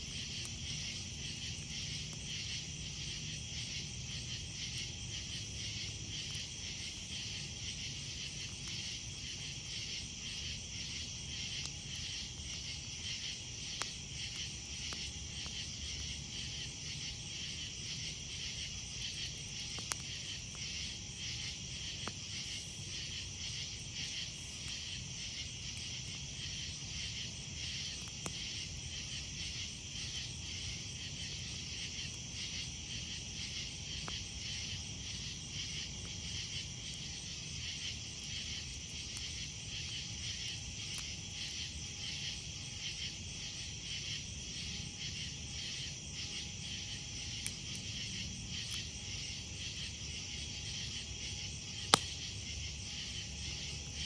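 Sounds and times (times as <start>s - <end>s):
campfire popping: 0.0s - 43.6s, 44.3s - 54.0s
night insects chorus: 0.0s - 54.0s.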